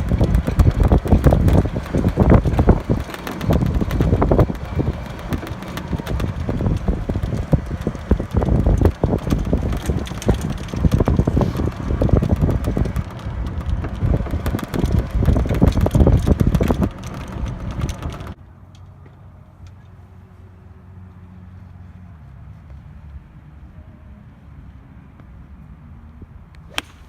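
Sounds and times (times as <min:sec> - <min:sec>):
wind buffeting microphone: 0:00.0 - 0:18.4.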